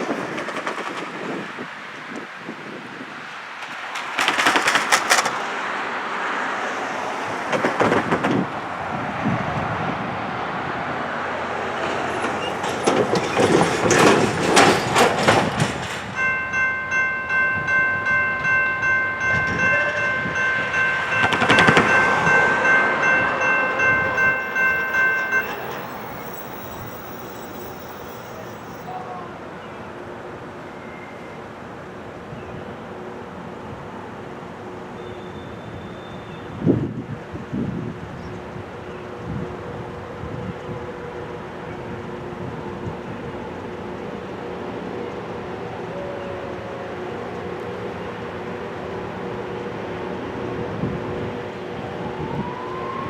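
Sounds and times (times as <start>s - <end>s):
rail grinder grinding: 3.6s - 8.6s, 11.1s - 28.9s.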